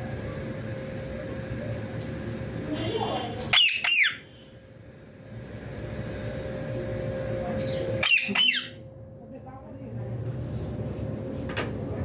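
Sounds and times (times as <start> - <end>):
steady hum: 0.0 - 12.0
parrot shrill calls: 3.5 - 4.3, 7.6 - 8.8.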